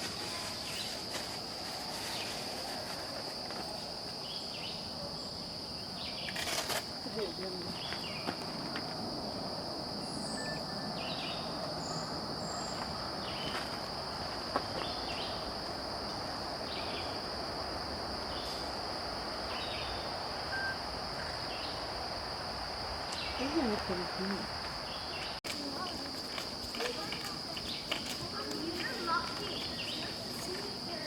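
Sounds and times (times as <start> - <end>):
insect chirps: 0.0 - 31.0
insect trill: 0.0 - 31.0.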